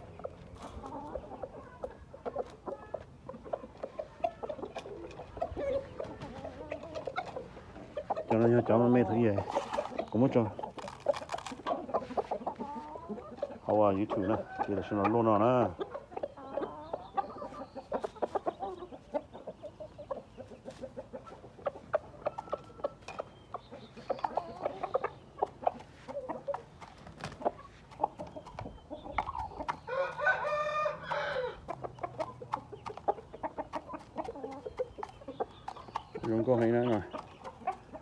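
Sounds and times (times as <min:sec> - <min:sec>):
chickens clucking: 0:00.0 - 0:38.0
rooster crowing: 0:29.9 - 0:31.6.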